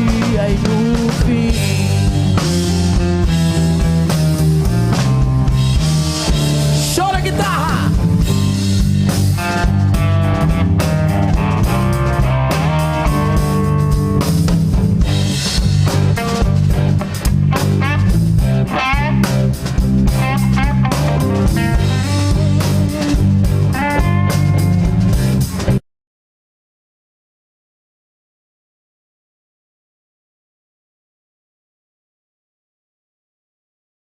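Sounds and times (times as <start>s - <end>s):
rock band playing: 0.0s - 25.8s
electric guitar solo: 4.7s - 14.5s, 16.2s - 25.2s.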